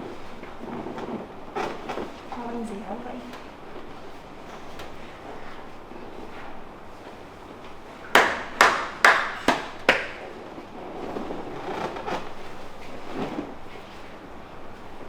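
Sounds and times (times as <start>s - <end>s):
hands slapping a back: 8.1s - 10.3s.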